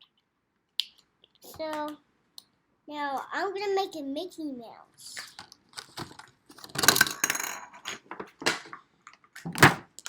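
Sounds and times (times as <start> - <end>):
plastic toys clicking and clattering: 5.1 - 10.0
plastic rattle: 5.2 - 8.8.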